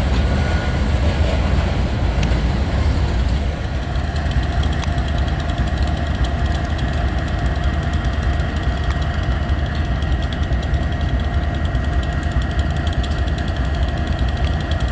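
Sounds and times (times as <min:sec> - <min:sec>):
engine rumbling: 0:00.0 - 0:14.9
fast regular ticking: 0:03.1 - 0:14.9.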